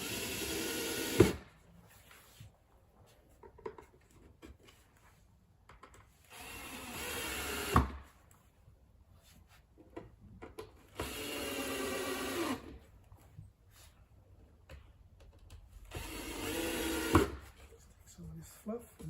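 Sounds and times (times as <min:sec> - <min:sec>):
power drill driving screws: 0:00.0 - 0:01.4, 0:06.2 - 0:08.0, 0:10.9 - 0:12.8, 0:15.9 - 0:17.4.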